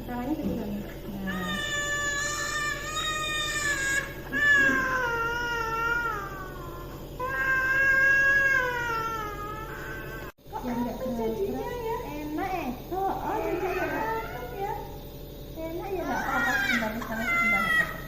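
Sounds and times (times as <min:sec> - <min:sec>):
steady low hum: 0:00.0 - 0:18.0
young child wailing: 0:01.6 - 0:10.3.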